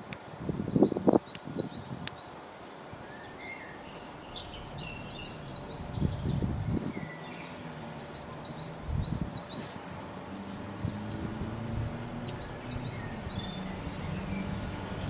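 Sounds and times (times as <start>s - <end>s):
wild birds singing: 0.0s - 15.0s
low rumble: 4.2s - 15.0s.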